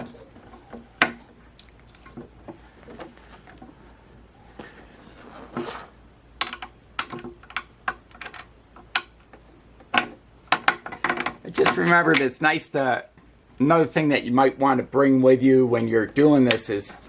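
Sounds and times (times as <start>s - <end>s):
clicks and knocks of hardware: 6.4s - 12.3s.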